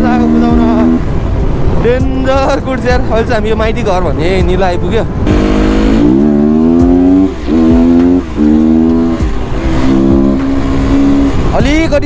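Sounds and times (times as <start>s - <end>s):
motorcycle engine accelerating: 5.2s - 11.7s.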